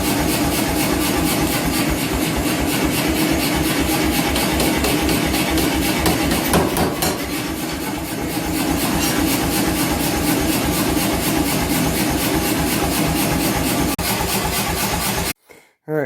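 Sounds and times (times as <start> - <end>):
power hammer running: 0.0 - 15.4.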